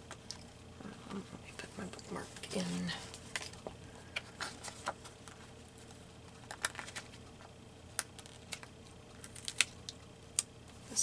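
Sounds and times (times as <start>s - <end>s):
paper rustling: 2.2s - 9.8s.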